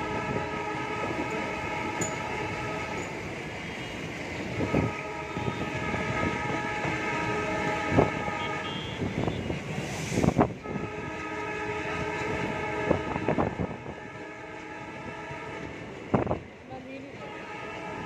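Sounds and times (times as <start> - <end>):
train wheels clicking on rails: 0.0 - 5.0
diesel locomotive horn: 0.0 - 16.4, 17.1 - 18.0
diesel locomotives arriving: 0.0 - 18.0.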